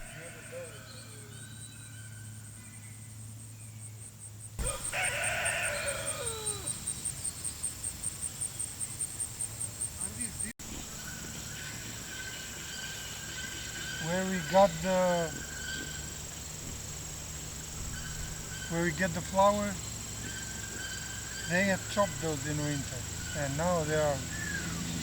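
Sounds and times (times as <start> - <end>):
rooster crowing: 0.0 - 2.0, 4.6 - 7.0, 11.5 - 16.4.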